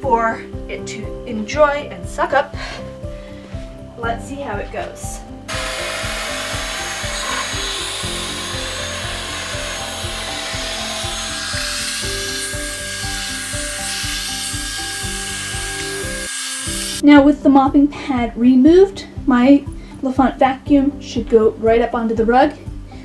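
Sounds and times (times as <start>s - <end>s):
background music with steady beat: 0.0s - 23.0s
robot vacuum suction hiss: 5.5s - 17.0s.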